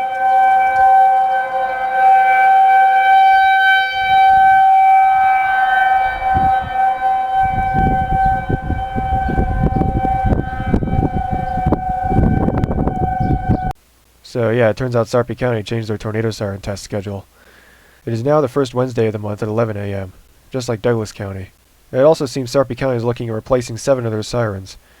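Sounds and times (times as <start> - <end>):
low rumbling noise: 0.0 - 13.8
tornado siren steady tone: 0.0 - 13.8.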